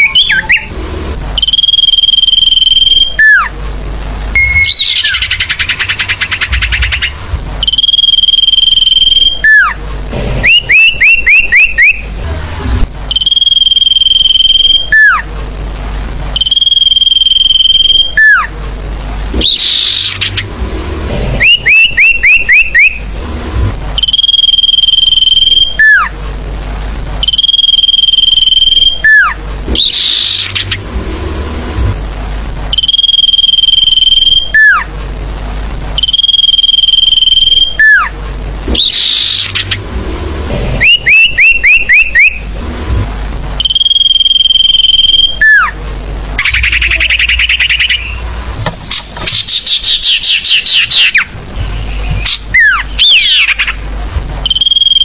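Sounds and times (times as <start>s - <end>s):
high whistle bird call: 0.0s - 0.7s, 1.4s - 3.5s, 4.4s - 9.8s, 10.5s - 12.1s, 13.1s - 15.2s, 16.4s - 18.5s, 19.4s - 20.4s, 21.4s - 23.0s, 24.0s - 26.1s, 27.2s - 30.8s, 32.7s - 34.9s, 36.0s - 38.1s, 38.7s - 39.8s, 40.8s - 42.4s, 43.6s - 45.8s, 46.4s - 48.3s, 49.3s - 53.8s, 54.5s - 55.0s
rapid falling chirps: 0.0s - 3.6s, 4.4s - 9.8s, 13.1s - 15.3s, 16.4s - 18.6s, 19.3s - 23.3s, 24.0s - 26.2s, 27.2s - 31.8s, 32.7s - 34.9s, 36.0s - 42.6s, 43.6s - 45.8s, 46.4s - 55.0s
low steady hum: 0.0s - 55.0s.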